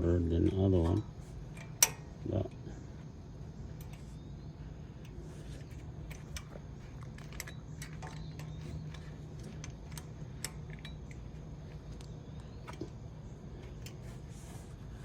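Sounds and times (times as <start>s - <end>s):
steady low hum: 0.0s - 15.0s
light metallic clicks: 0.4s - 2.7s, 5.0s - 14.1s.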